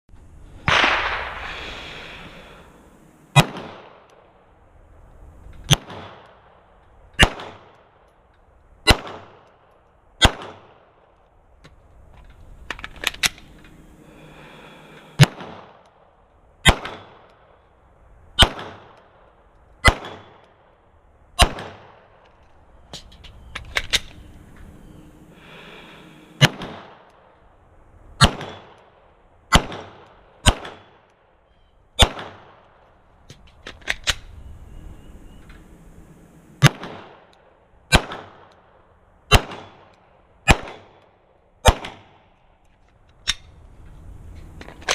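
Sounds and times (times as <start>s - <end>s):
pistol shots: 0.7s - 1.4s, 3.3s - 4.1s, 5.7s - 6.4s, 7.2s - 7.9s, 8.8s - 9.5s, 10.2s - 10.8s, 15.2s - 15.8s, 16.6s - 17.4s, 18.4s - 19.0s, 19.8s - 20.4s, 21.4s - 22.0s, 26.4s - 27.1s, 28.2s - 28.9s, 29.5s - 31.0s, 32.0s - 32.6s, 36.6s - 37.3s, 37.9s - 38.6s, 39.3s - 41.0s, 41.6s - 42.2s.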